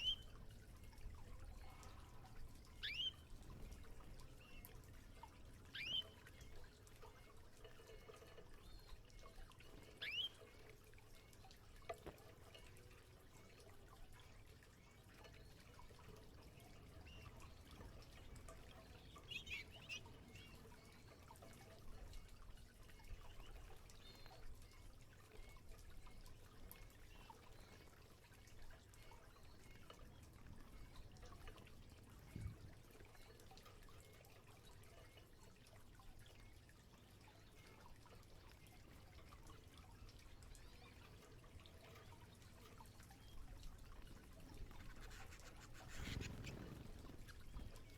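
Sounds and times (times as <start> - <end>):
canary chirps: 0.0 - 0.4, 2.8 - 3.7, 5.6 - 6.6, 9.7 - 10.5, 16.8 - 21.2, 44.1 - 47.9
trickling and dripping water: 0.0 - 47.9.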